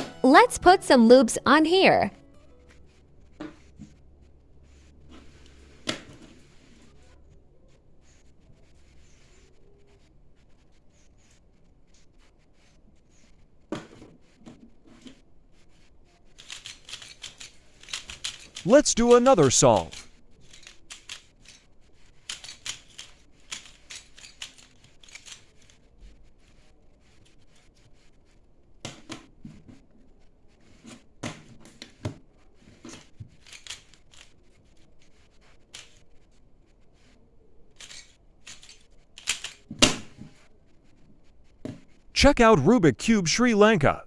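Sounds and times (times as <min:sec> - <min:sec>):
plastic puzzle clicking: 0:16.3 - 0:18.7, 0:19.4 - 0:25.8, 0:32.8 - 0:34.4, 0:37.8 - 0:40.2.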